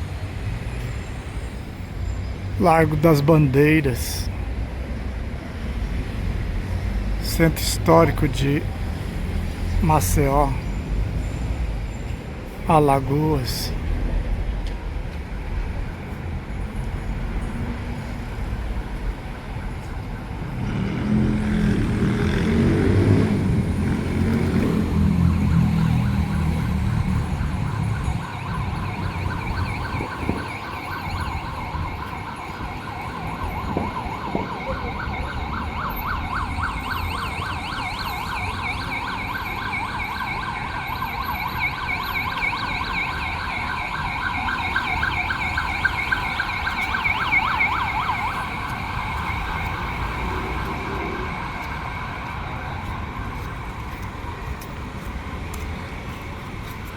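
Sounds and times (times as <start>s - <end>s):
city street traffic: 0.0s - 56.9s
warbling emergency siren: 24.4s - 54.5s.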